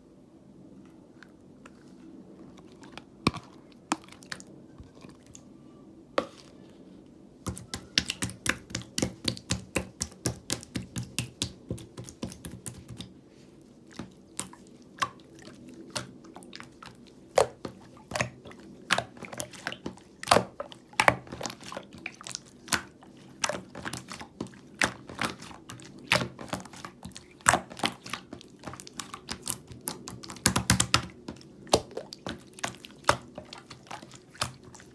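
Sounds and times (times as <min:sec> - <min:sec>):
slime clicking and popping: 0:07.5 - 0:13.1, 0:24.8 - 0:33.8.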